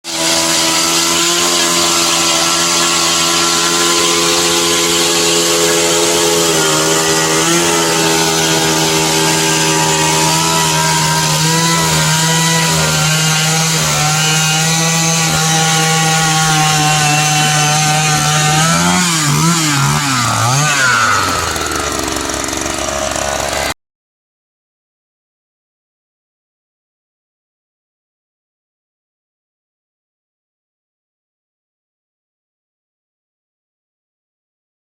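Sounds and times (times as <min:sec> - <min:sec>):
ice auger drilling through ice: 0:00.0 - 0:23.8.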